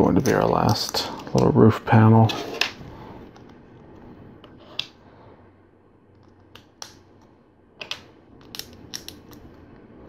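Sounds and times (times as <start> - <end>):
plastic bricks clicking and snapping: 7.8 - 9.4.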